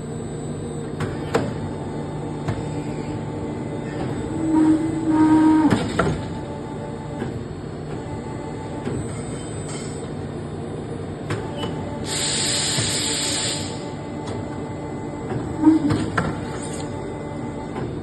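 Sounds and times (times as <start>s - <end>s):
pipe bending machine humming: 0.0s - 10.3s, 10.9s - 18.0s
hissing air burst: 12.1s - 13.8s.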